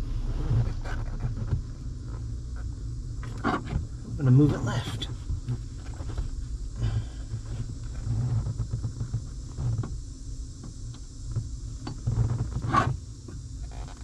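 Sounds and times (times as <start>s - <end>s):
low rumble: 0.0s - 9.5s.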